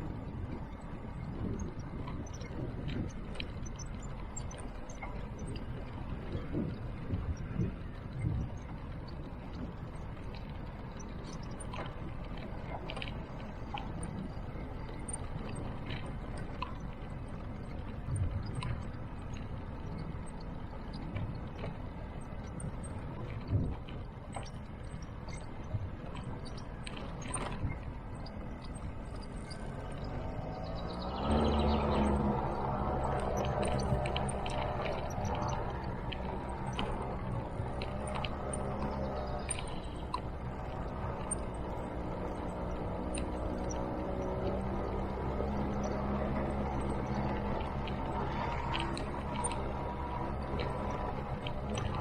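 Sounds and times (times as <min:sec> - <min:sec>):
light clicks and rattles: 0:00.0 - 0:52.0
scooter riding rumble: 0:00.0 - 0:52.0
wind on microphone: 0:05.4 - 0:09.8
motor scooter engine running: 0:27.4 - 0:52.0.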